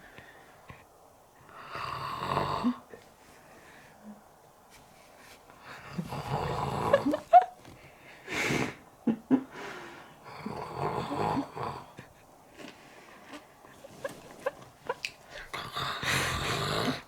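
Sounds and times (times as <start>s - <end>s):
comic snoring: 1.6s - 2.8s, 5.8s - 7.2s, 10.2s - 12.1s, 15.6s - 17.0s
hissing breath out: 8.1s - 8.8s.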